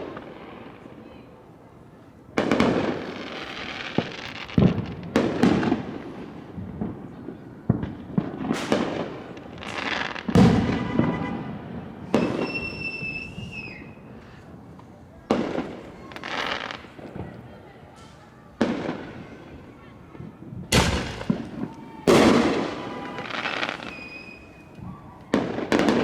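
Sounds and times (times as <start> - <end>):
fireworks banging and crackling: 0.0 - 26.0
high whistle: 12.1 - 14.1, 23.0 - 24.7.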